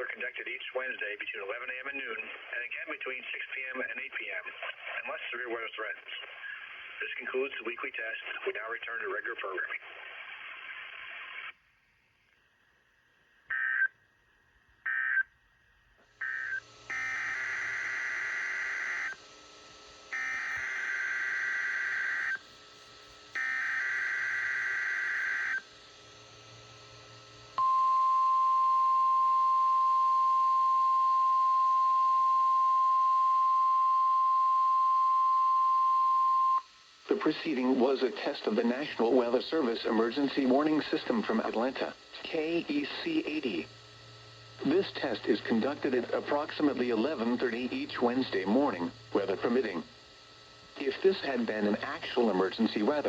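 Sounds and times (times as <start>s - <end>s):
steady warning alarm tone: 16.1s - 36.7s
buzzing two-tone data bursts: 16.2s - 19.3s, 20.0s - 22.5s, 23.3s - 25.6s.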